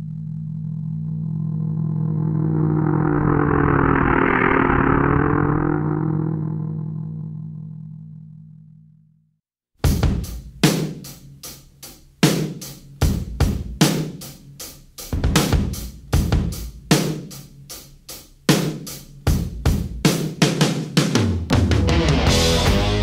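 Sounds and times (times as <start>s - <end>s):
rock drum kit beat: 9.8s - 23.0s.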